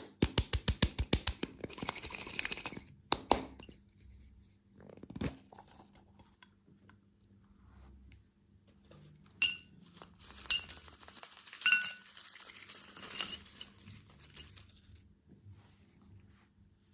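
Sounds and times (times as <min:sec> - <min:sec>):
hard objects clinking: 0:09.4 - 0:15.0.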